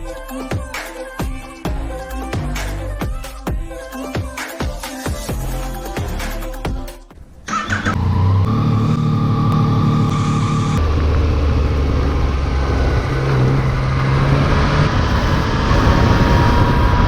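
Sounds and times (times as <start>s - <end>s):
motorcycle engine running: 7.6s - 17.0s.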